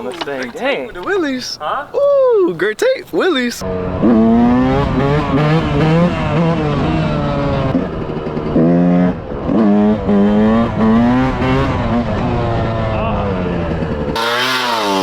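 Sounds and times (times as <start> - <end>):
two-stroke engine revving: 3.6 - 15.0.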